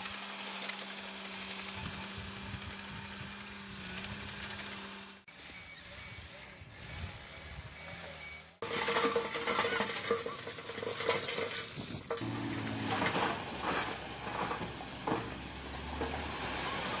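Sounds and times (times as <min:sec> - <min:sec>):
earthmoving machinery scraping soil: 0:00.0 - 0:17.0
stones clattering: 0:08.6 - 0:16.3.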